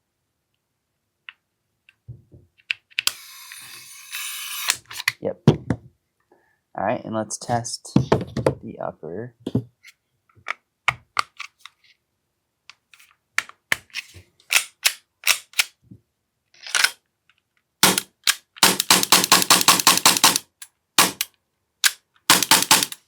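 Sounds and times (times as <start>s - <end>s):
airsoft pistol shots: 17.8s - 21.3s, 22.3s - 23.0s.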